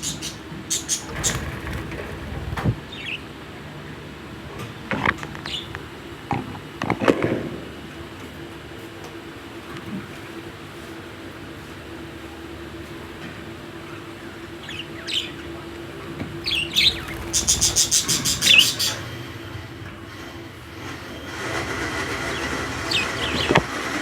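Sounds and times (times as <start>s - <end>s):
low background hum: 0.0s - 21.4s
budgerigars chirping: 16.5s - 19.0s.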